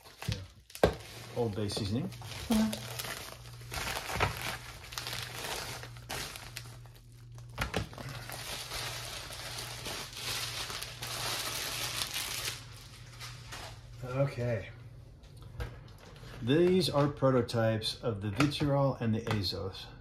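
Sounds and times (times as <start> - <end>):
packaging crinkling: 0.0 - 13.9
low steady hum: 0.0 - 20.0.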